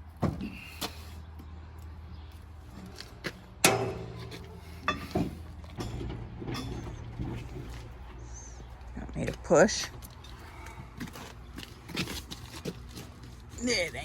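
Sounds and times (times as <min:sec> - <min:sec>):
metal clanks and knocks: 0:02.7 - 0:08.2.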